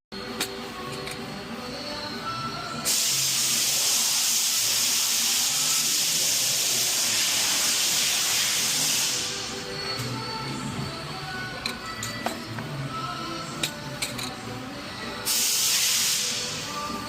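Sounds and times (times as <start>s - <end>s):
hiss of escaping air: 2.9s - 9.5s, 15.3s - 16.7s.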